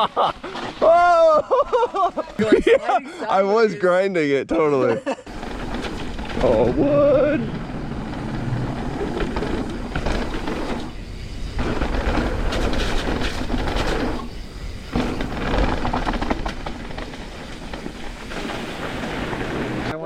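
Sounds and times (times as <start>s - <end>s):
bike chain and frame clattering: 5.3s - 19.9s
bike tyres rumbling on trail: 5.3s - 20.0s.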